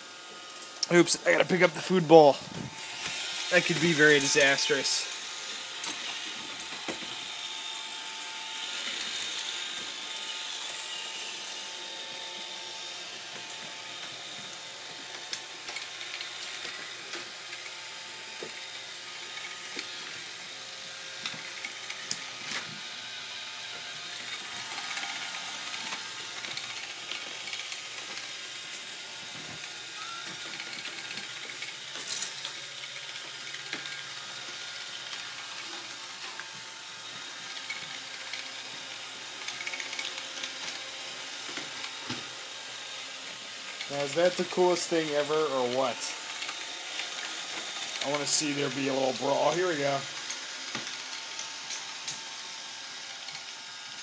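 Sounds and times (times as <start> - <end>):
robot vacuum whirring: 0.0 - 54.0
constant whine: 43.3 - 52.2.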